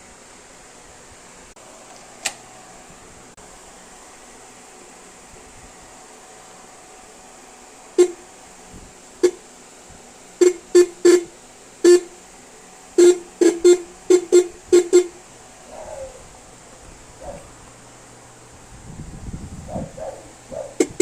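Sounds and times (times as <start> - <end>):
car horn short honks: 8.0 - 8.2, 10.4 - 12.2, 13.0 - 15.2.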